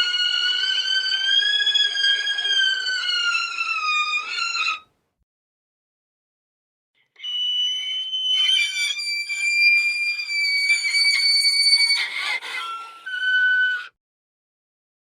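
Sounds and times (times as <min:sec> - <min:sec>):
shrill eerie tones: 0:07.2 - 0:14.0.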